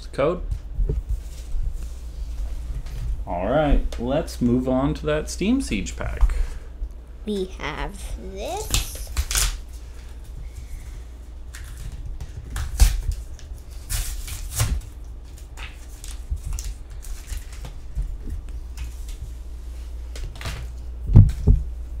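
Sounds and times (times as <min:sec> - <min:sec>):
foil pack tearing and crinkling: 0:08.6 - 0:09.6, 0:11.5 - 0:17.7.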